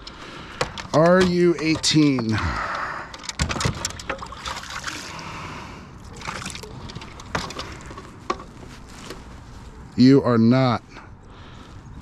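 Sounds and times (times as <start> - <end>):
knocks and clicks against hull: 0.0 - 4.4.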